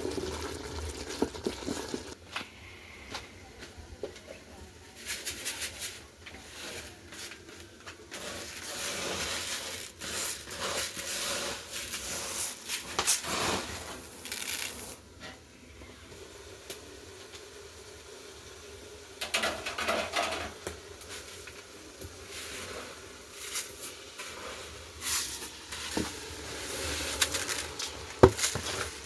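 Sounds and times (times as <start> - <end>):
kitchen scraping: 4.9 - 15.4, 19.2 - 21.6, 22.2 - 29.0.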